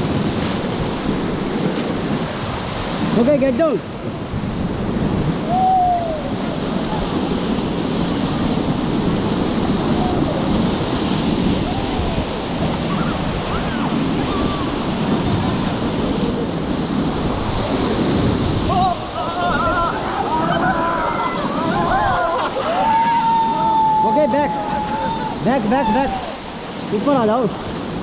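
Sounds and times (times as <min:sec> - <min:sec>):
whitewater rushing: 0:00.0 - 0:28.0
faint shouts: 0:18.7 - 0:26.4.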